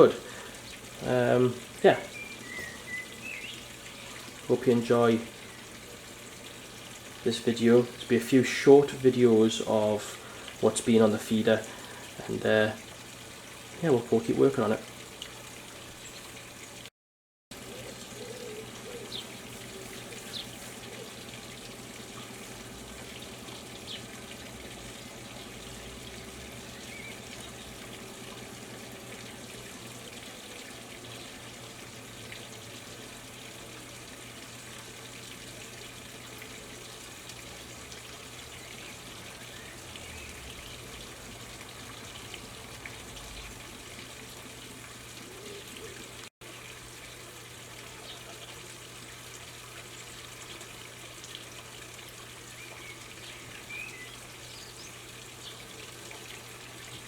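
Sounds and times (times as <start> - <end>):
outdoor background hiss: 0.0 - 16.9, 17.6 - 57.0
faint bird chirps: 2.1 - 4.2.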